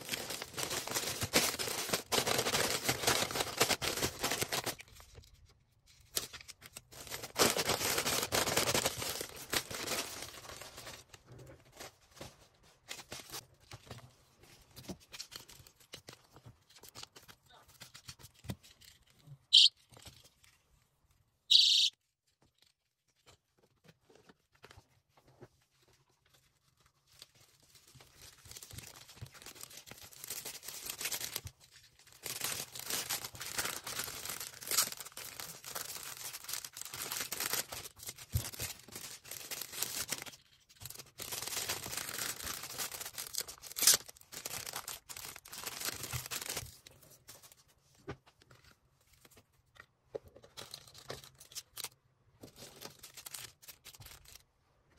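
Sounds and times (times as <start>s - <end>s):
plastic packaging crinkling: 0.0s - 5.2s, 5.9s - 12.2s, 26.7s - 47.0s.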